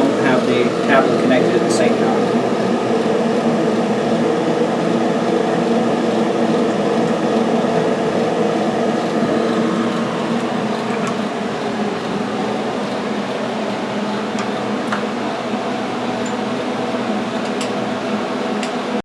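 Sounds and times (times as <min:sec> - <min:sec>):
steady mechanical hum: 0:00.0 - 0:19.0.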